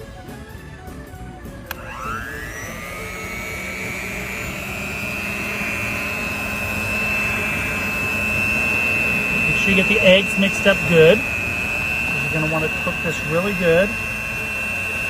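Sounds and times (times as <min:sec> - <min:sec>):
electric mixer motor whine: 0:00.0 - 0:15.0
mixer switch click: 0:01.6 - 0:02.6.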